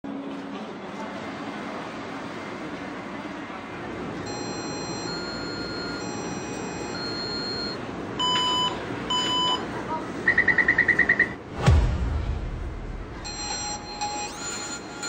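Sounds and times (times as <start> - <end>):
chime tones melody: 13.2 - 15.0
sharp beeps: 13.2 - 15.0.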